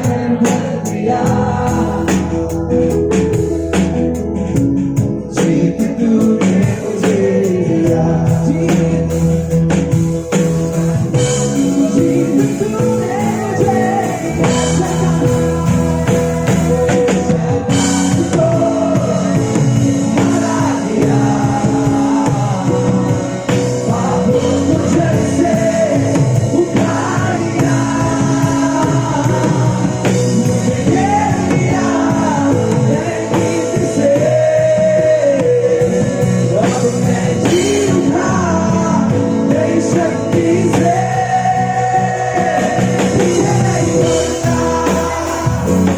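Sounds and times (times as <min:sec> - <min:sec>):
live rock band playing: 0:00.0 - 0:45.9
person singing: 0:11.4 - 0:45.9.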